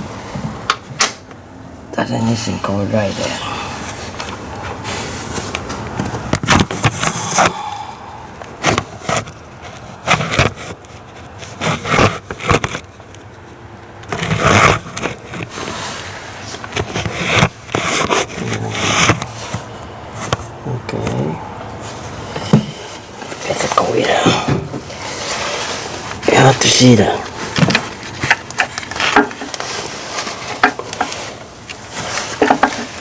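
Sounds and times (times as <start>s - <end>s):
hand tools scraping and clicking: 3.1s - 7.8s, 14.0s - 33.0s.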